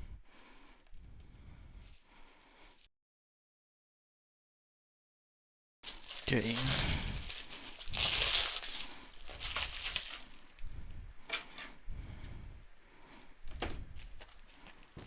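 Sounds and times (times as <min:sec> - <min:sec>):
plastic packaging crinkling and tearing: 0:05.8 - 0:10.6.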